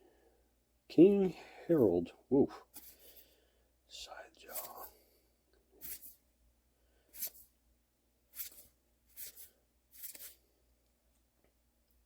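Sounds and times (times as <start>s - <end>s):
trading cards sliding: 5.8s - 6.2s, 7.2s - 7.5s, 8.3s - 10.4s.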